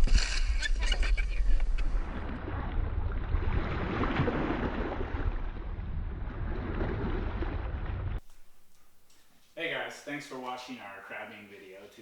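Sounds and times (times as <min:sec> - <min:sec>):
wind buffeting microphone: 0:00.0 - 0:08.2.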